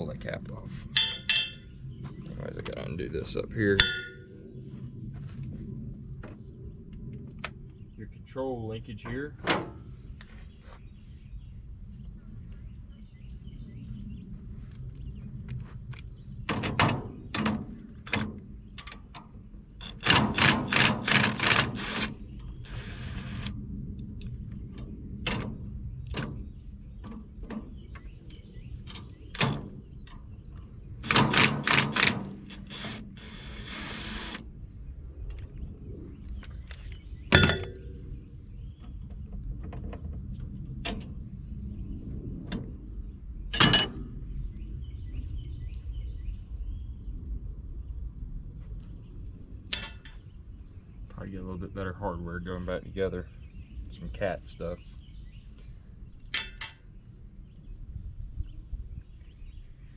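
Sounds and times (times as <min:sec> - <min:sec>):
sharp metal clanks: 0:01.0 - 0:01.8, 0:03.8 - 0:04.3, 0:37.3 - 0:38.0, 0:49.7 - 0:50.2, 0:56.3 - 0:56.9
knocks and clicks on metal: 0:03.8 - 0:04.2.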